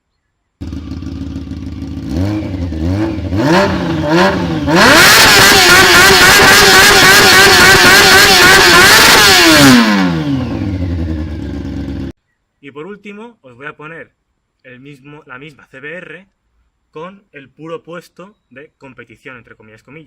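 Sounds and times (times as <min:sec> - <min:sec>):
motorcycle engine revving: 0:00.6 - 0:12.1.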